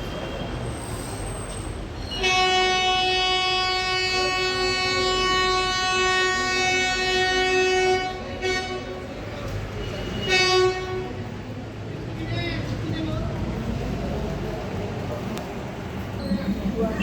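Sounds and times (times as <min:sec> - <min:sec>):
train rumble: 0:00.0 - 0:17.0
train horn blast: 0:02.2 - 0:09.1, 0:10.1 - 0:11.3.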